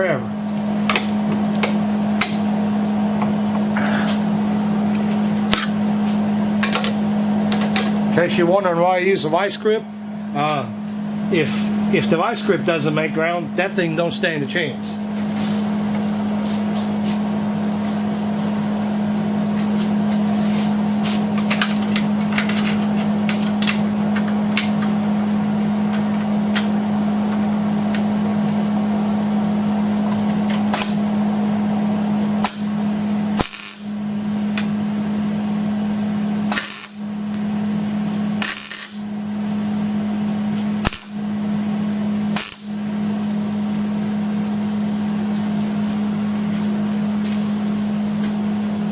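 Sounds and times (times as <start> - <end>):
electrical hum: 0.0 - 48.9
welding arc crackling: 32.4 - 32.8, 33.4 - 34.0, 36.5 - 37.4, 38.4 - 39.1, 40.8 - 41.2, 42.3 - 42.8
sharp click: 40.8 - 41.2.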